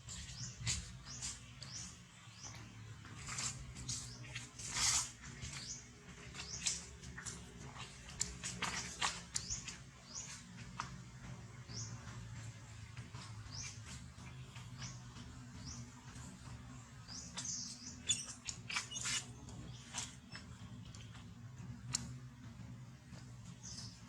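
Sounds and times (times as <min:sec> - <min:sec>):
animal chirping: 0:17.9 - 0:19.3.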